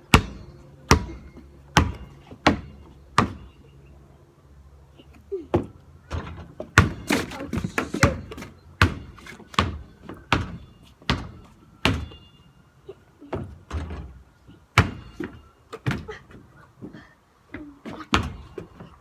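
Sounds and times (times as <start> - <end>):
basketball bouncing: 0.1 - 3.6, 5.6 - 12.2, 14.8 - 16.2, 17.9 - 18.9.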